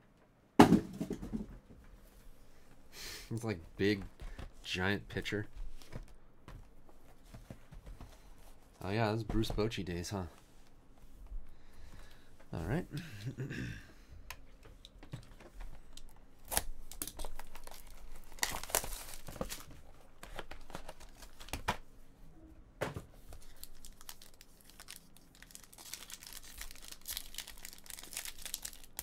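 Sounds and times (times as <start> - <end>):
plastic wrapping tearing and crinkling: 15.9 - 21.7, 23.4 - 29.0.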